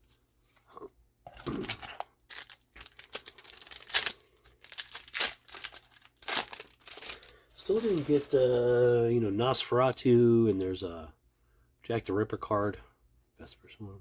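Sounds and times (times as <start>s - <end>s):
wrapper tearing and crinkling: 1.4s - 8.6s.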